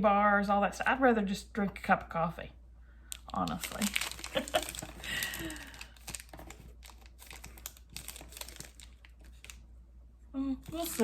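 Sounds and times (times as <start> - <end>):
packaging crinkling: 3.1 - 9.6, 10.7 - 11.0.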